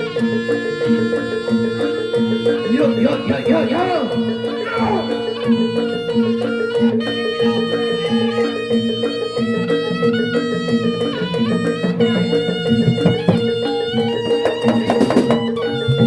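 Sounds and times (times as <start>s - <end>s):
repeating drum patterns: 1.5s - 16.0s
high sliding melody: 2.4s - 9.3s.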